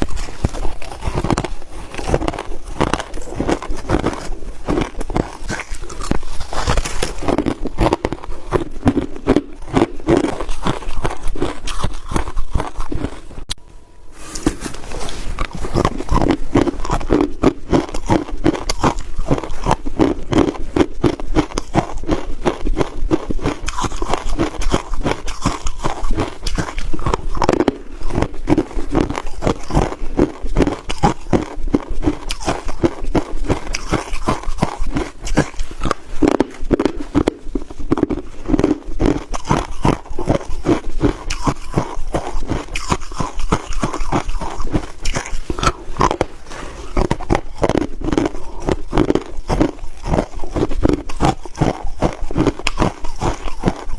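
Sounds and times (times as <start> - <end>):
crushed ice being chewed: 0.0 - 13.6, 14.3 - 53.9.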